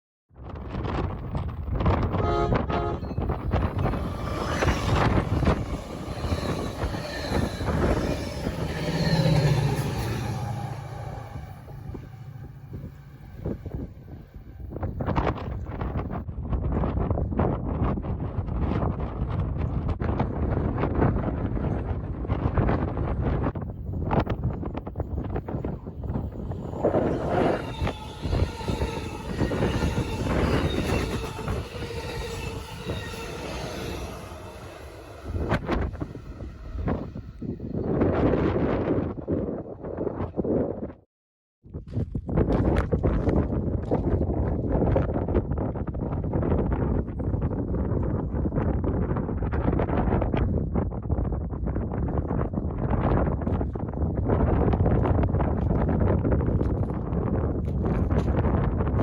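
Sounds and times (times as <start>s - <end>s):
low hum: 2.0s - 15.9s, 23.9s - 38.4s
high wheel squeals: 2.8s - 15.5s, 25.4s - 38.0s
rail vehicle clanking on track: 3.0s - 15.8s, 25.0s - 37.4s.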